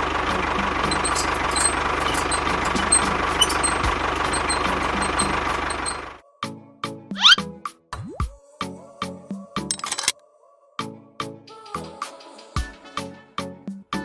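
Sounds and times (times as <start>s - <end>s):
machine engine rumbling: 0.0s - 6.2s.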